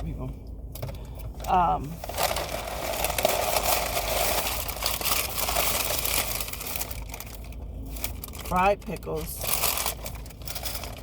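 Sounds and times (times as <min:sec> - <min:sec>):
food packaging rustling: 0:02.0 - 0:08.6, 0:09.2 - 0:11.0.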